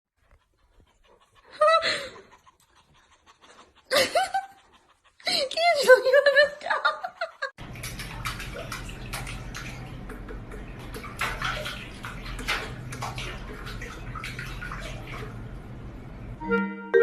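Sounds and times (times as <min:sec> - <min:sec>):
water running and splashing: 0:07.6 - 0:15.6.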